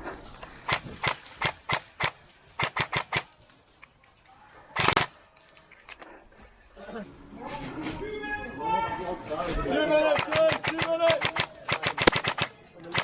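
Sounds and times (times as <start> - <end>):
airsoft gun shots: 0.7 - 3.3, 4.8 - 5.1, 10.1 - 13.0.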